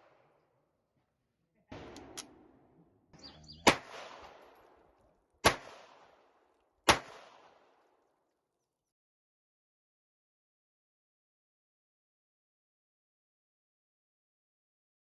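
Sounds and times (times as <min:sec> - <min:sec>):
pistol shots with echo: 0:01.7 - 0:08.0.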